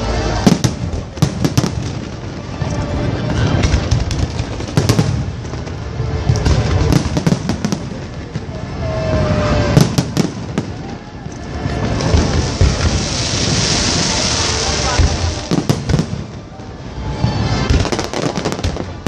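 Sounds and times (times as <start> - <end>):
firework crackling: 0.0 - 19.0
firework whistle: 7.1 - 19.0.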